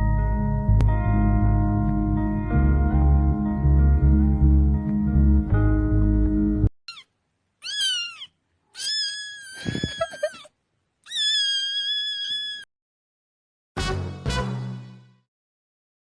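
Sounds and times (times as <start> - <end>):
cat meowing: 6.9 - 12.7.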